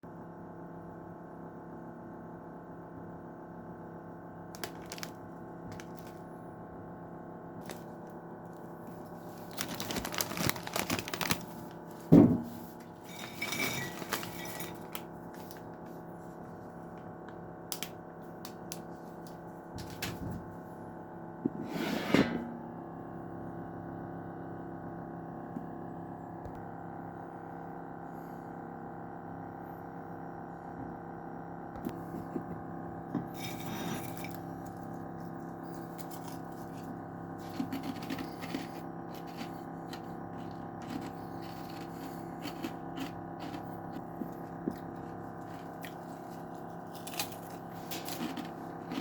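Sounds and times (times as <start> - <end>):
snack bag crinkling: 4.6 - 6.3, 7.6 - 12.1, 12.8 - 15.9, 33.4 - 49.0
snack crunching: 35.6 - 49.0.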